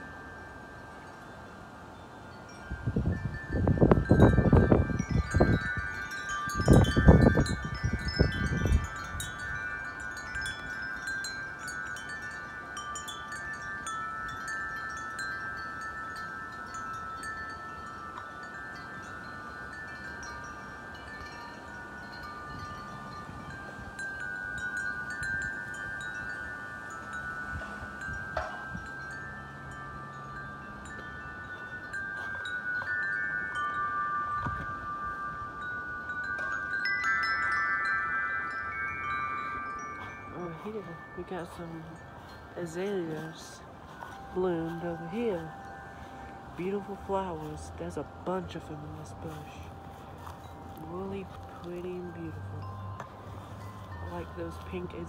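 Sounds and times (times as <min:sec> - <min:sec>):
wind chimes ringing: 0:00.0 - 0:55.0
wind gusts on microphone: 0:00.0 - 0:55.0.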